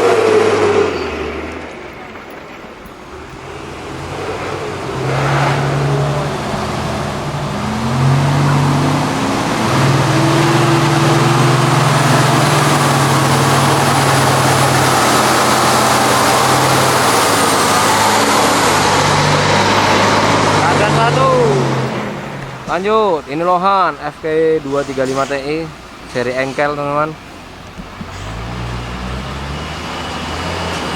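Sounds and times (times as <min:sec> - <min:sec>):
truck diesel engine under load: 0:00.0 - 0:30.9.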